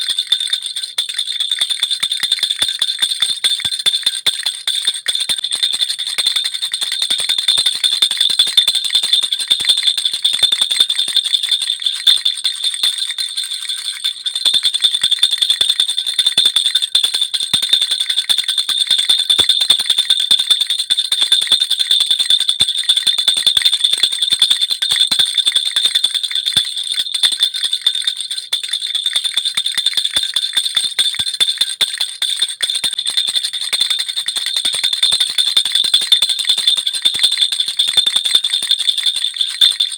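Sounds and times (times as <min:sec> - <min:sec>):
baby rattle jingling: 0:00.0 - 0:20.2, 0:22.9 - 0:39.9.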